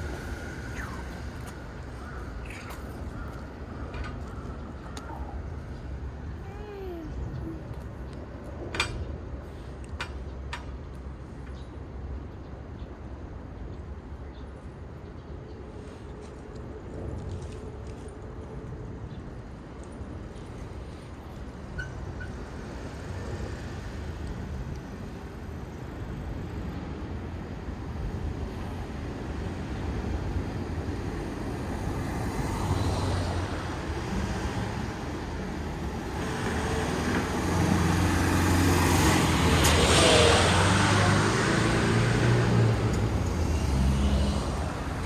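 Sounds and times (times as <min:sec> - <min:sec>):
vehicle engine rumble passing: 0:29.9 - 0:45.0.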